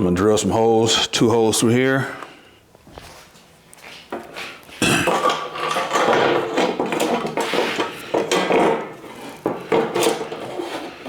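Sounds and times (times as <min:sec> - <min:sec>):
metallic clattering and knocking: 0:04.8 - 0:11.0.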